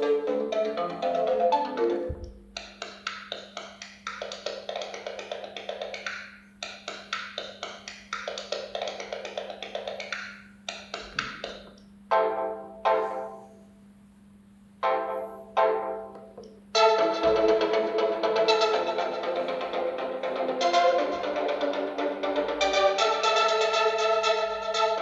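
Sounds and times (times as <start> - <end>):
wood-block-like ringtone notes: 0.0 - 12.3, 16.8 - 25.0
steady low hum: 10.3 - 25.0
phone ringtone melody: 14.8 - 16.0.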